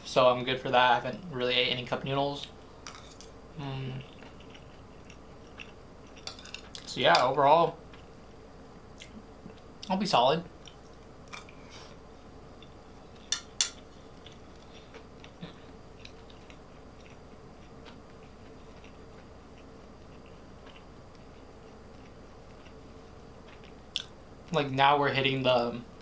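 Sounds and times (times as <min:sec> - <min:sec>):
faint steady hum: 0:00.0 - 0:26.0
cutlery clinking against a dish: 0:13.3 - 0:13.8.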